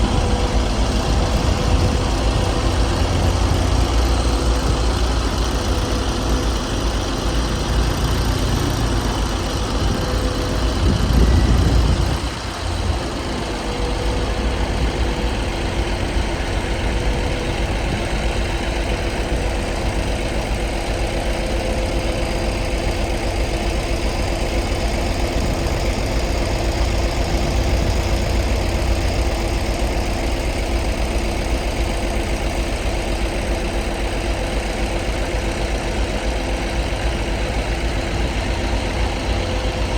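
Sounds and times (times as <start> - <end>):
compactor engine rumbling: 0.0 - 39.9.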